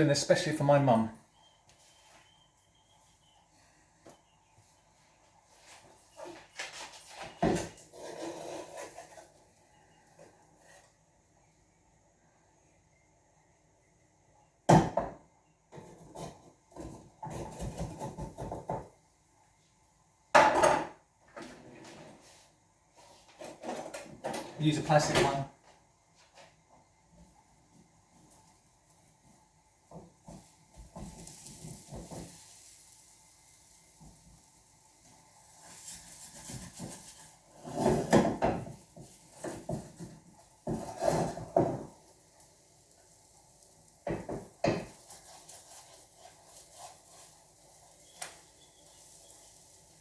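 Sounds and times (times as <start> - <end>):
pans and utensils clattering: 20.4 - 22.0, 37.6 - 42.0.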